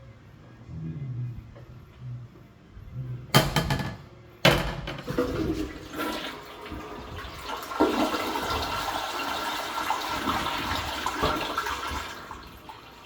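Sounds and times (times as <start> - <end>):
toilet flushing: 4.9 - 13.0.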